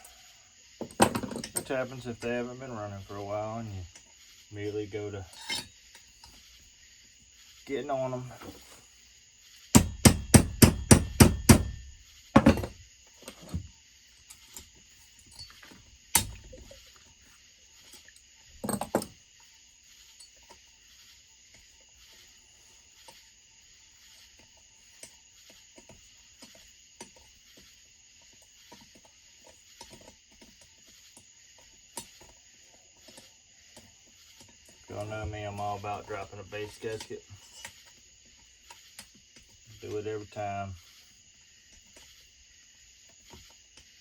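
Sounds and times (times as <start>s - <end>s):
tools and parts clicking: 0.8s - 1.7s, 5.3s - 6.4s, 14.2s - 16.8s.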